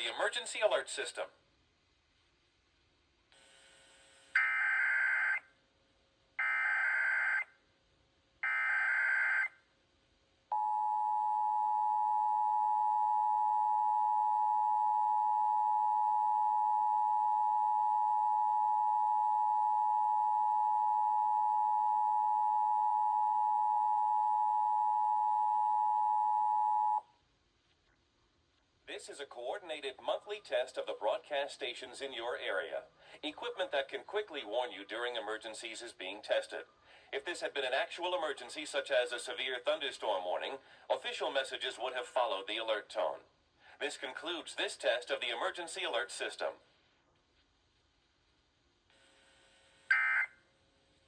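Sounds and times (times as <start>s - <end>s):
two-tone attention signal: 49.9s - 50.3s.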